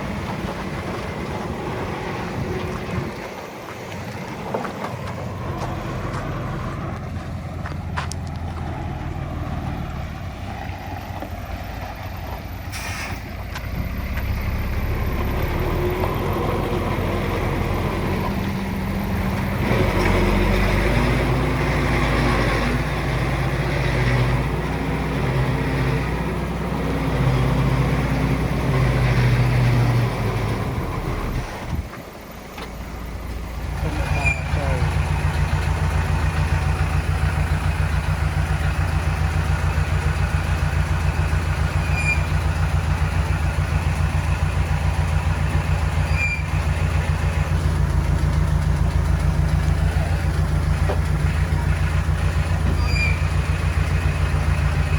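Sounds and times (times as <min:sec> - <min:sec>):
heavy diesel machinery running: 0:00.0 - 0:54.9
short hiss: 0:12.7 - 0:13.3.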